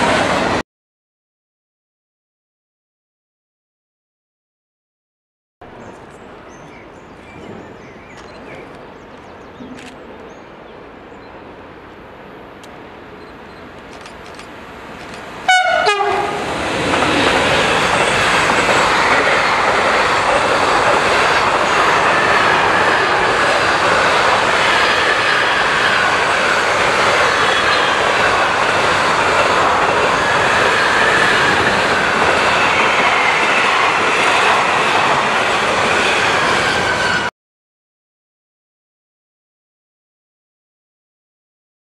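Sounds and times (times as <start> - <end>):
train wheels rushing on rails: 12.5 - 37.3
train horn blast: 15.5 - 16.6.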